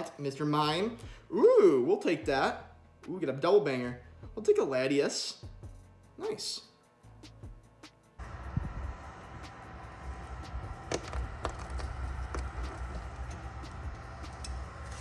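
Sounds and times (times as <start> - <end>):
steady low hum: 8.2 - 15.0
cards clicking and tapping: 10.9 - 13.0.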